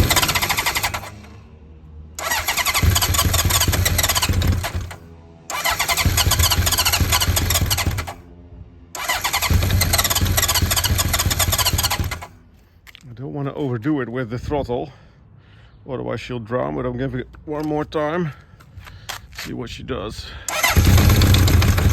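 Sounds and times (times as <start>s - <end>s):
motorcycle engine cranking: 0.0s - 1.3s, 2.2s - 8.2s, 9.0s - 12.4s, 20.5s - 21.9s.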